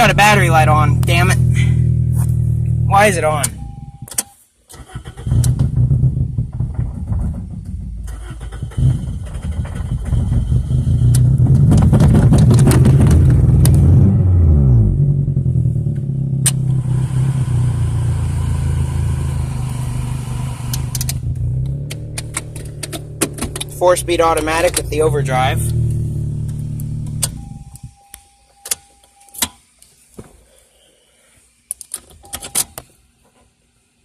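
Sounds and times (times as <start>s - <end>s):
car engine revving and idling: 0.0s - 4.1s, 5.2s - 27.9s.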